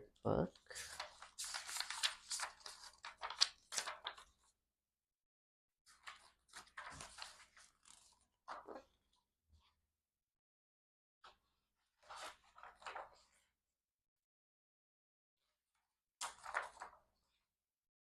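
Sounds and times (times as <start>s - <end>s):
paper booklet rustling: 0.8s - 4.5s, 5.9s - 9.0s, 12.0s - 13.4s, 16.2s - 17.4s.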